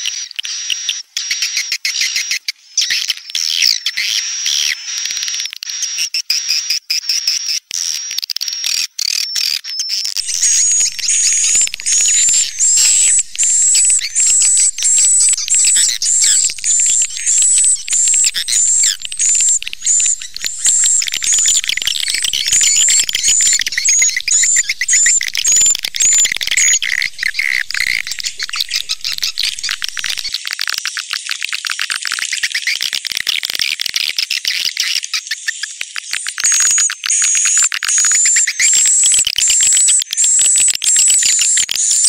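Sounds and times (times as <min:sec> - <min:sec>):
rapid clicking chatter: 0:10.2 - 0:30.3
sharp high chirp: 0:10.2 - 0:30.3
swiftlet twittering: 0:10.2 - 0:30.3.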